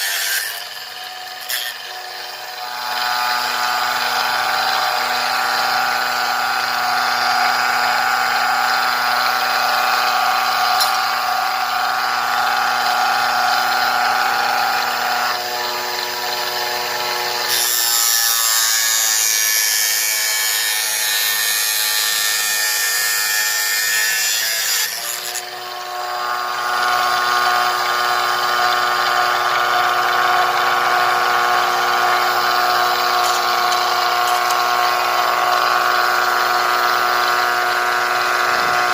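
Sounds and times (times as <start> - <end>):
blade cutting hiss: 0.0 - 3.4
cutting machine motor whine: 0.0 - 38.9.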